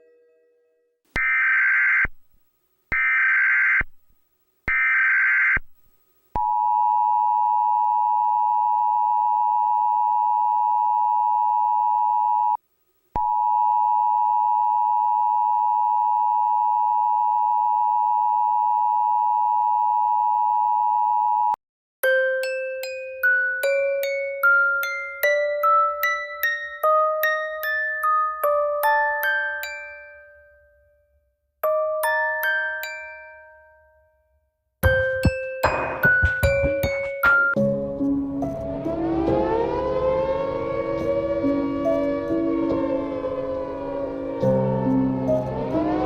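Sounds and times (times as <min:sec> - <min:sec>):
data bursts: 0:34.8 - 0:37.6.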